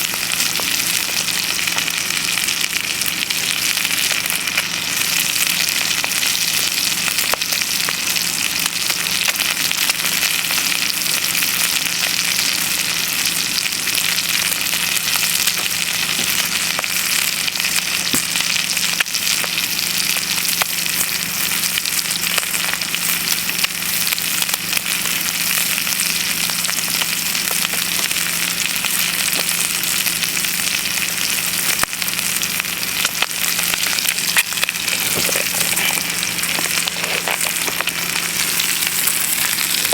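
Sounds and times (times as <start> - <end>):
bacon and eggs sizzling in pan: 0.0 - 39.9
pops and crackles: 30.8 - 39.9.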